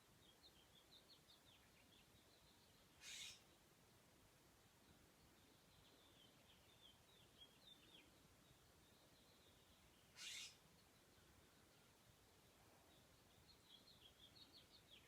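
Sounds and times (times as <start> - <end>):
faint bird chirps: 0.1 - 3.6, 4.8 - 12.0.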